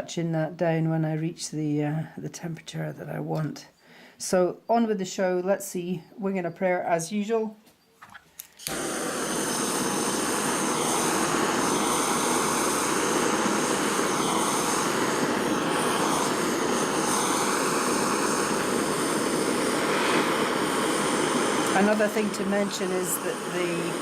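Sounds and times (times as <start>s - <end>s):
gas torch roaring: 8.4s - 24.0s.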